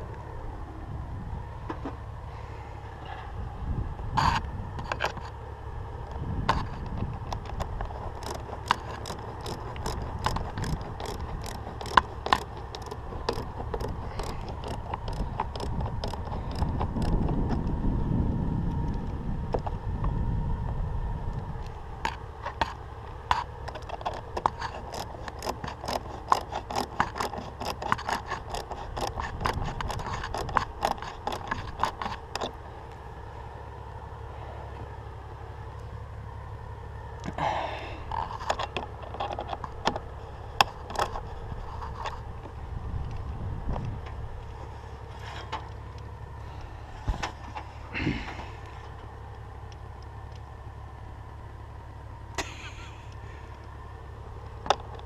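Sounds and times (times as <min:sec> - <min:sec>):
low rumbling handling noise: 0:00.0 - 0:55.0
hand ratchet clicking: 0:07.3 - 0:17.4, 0:23.3 - 0:32.5.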